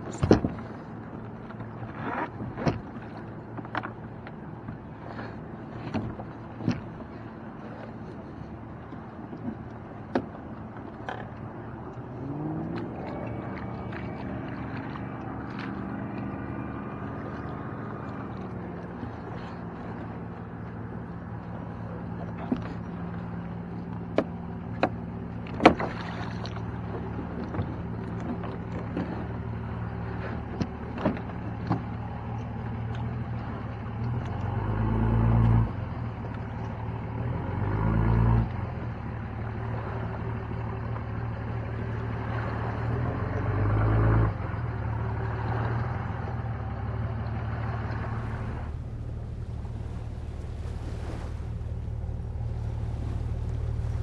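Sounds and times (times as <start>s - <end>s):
boat motor humming: 0.0s - 54.0s
low engine surge: 9.8s - 24.8s, 33.4s - 54.0s.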